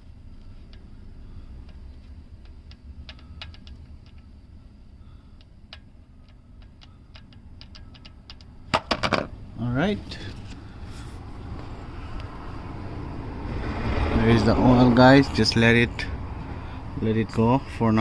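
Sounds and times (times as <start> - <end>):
wrench clicking: 2.4 - 4.3, 5.4 - 8.6
sharp knocks: 8.3 - 9.3.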